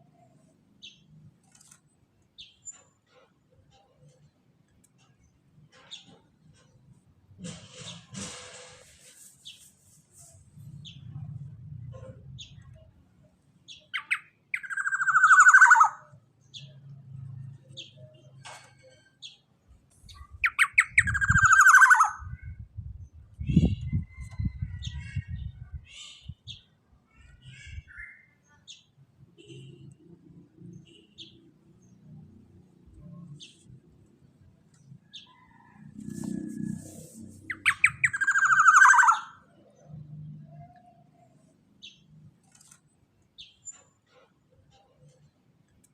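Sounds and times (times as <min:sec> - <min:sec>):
bird harsh calls: 0:13.8 - 0:16.2, 0:20.2 - 0:22.3, 0:37.4 - 0:39.6.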